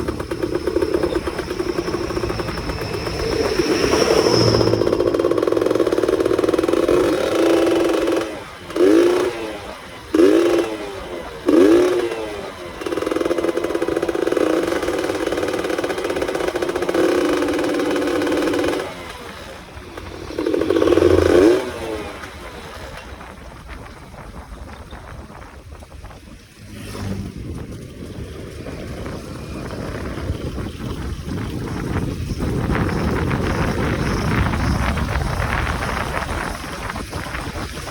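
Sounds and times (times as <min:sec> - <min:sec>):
two-stroke engine throttle blips: 0:00.0 - 0:24.0.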